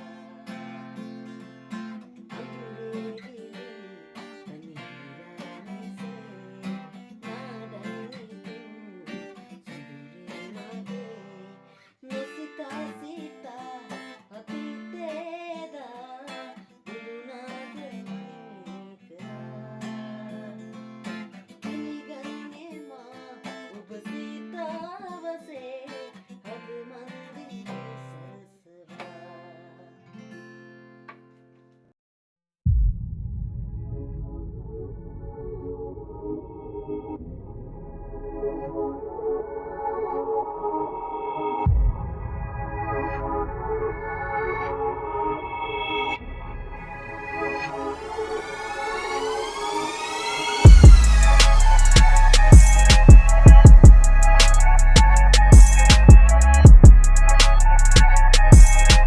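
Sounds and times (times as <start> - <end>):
acoustic guitar strumming: 0.0 - 15.3, 16.3 - 22.6, 46.2 - 59.0
person singing: 2.1 - 20.7, 21.7 - 29.9, 47.3 - 59.0.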